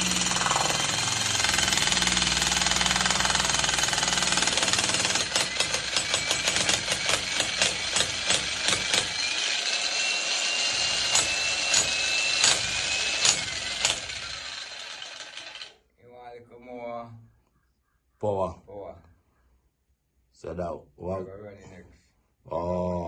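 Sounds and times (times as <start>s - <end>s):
jackhammer hammering: 0.0s - 15.7s.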